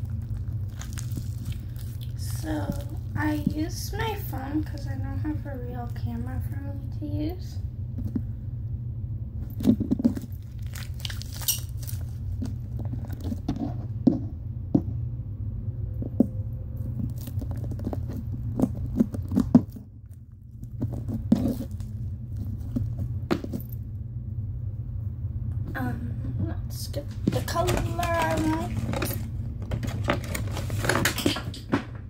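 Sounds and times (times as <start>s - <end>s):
slime squishing: 0.0s - 6.1s, 9.4s - 13.9s, 16.0s - 23.6s
steady low hum: 0.0s - 32.0s.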